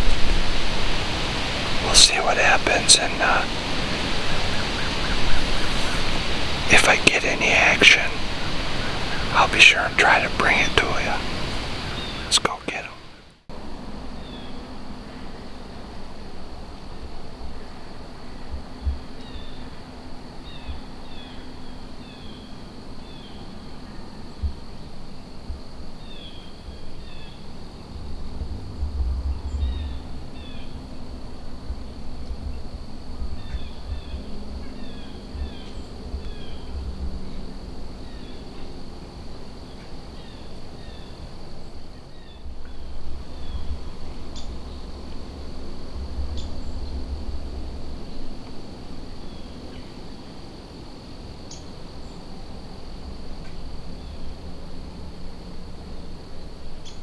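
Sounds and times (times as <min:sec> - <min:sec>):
crickets trilling: 0:00.0 - 0:57.0
bird chirps: 0:03.0 - 0:06.8
wind rumble on microphone: 0:27.9 - 0:30.4.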